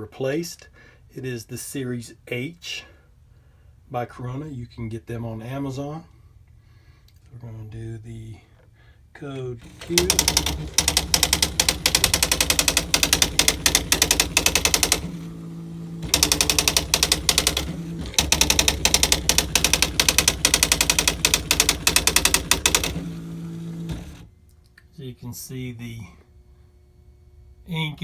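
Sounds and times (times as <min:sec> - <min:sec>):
electric typewriter typing: 0:09.6 - 0:24.3
typewriter motor humming: 0:09.6 - 0:24.3.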